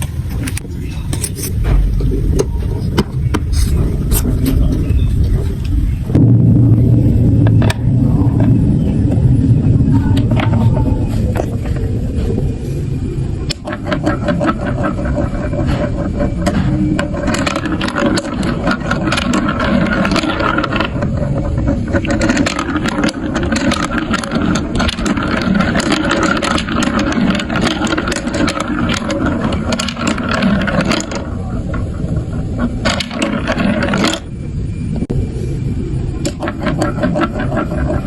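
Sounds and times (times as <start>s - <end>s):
marbles clicking and clattering: 7.4s - 34.3s, 36.2s - 38.0s
marbles rolling down plastic track: 7.4s - 34.3s, 36.2s - 38.0s.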